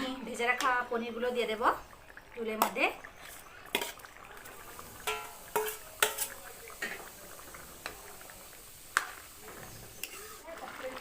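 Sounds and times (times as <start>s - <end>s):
metal spoon knocking on pan: 5.0s - 6.4s.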